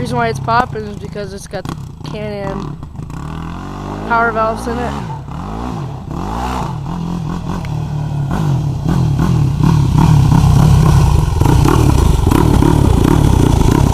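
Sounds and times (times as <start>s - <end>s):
quad engine running: 0.0s - 13.9s.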